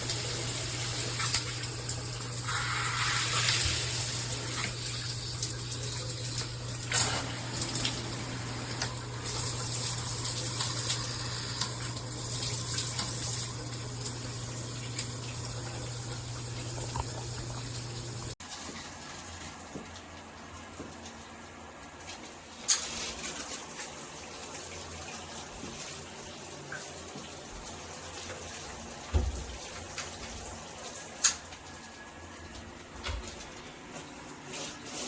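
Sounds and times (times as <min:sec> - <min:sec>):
shower water spraying: 0:00.0 - 0:19.6, 0:33.8 - 0:35.0.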